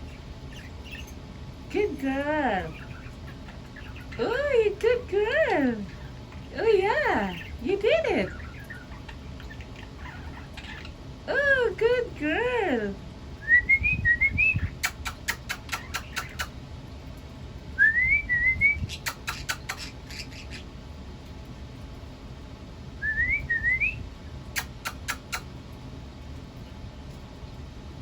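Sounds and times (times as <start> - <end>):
bird whistling a rising tune: 13.4 - 14.7, 17.8 - 19.0, 23.0 - 24.0
bird sharp clicks: 14.8 - 16.5, 18.9 - 19.9, 24.5 - 25.5.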